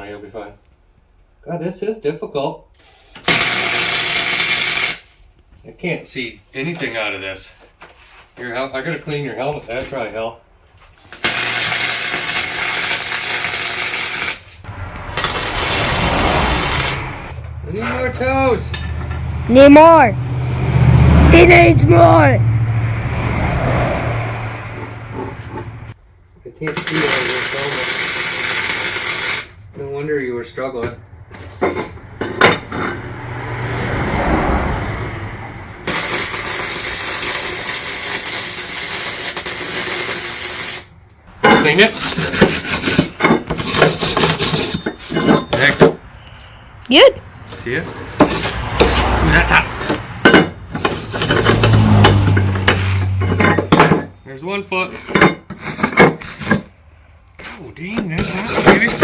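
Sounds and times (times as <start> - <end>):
arc welder sizzling and crackling: 3.3 - 5.0, 11.1 - 14.6, 27.0 - 29.6.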